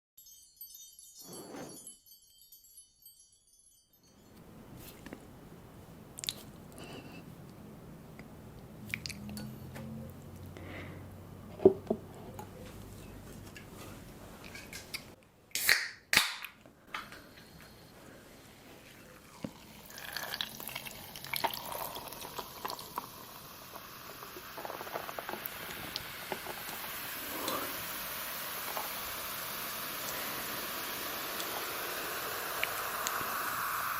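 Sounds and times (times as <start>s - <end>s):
wet chewing and slurping: 8.9s - 9.5s
steady hiss: 17.4s - 33.9s.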